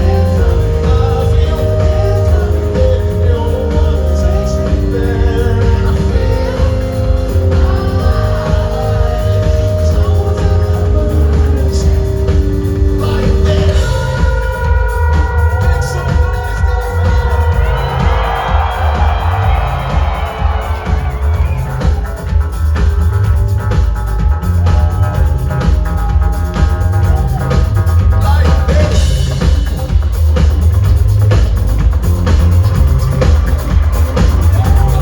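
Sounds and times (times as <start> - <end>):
person singing: 0.0 - 22.4, 33.3 - 35.0
live rock band: 0.0 - 35.0.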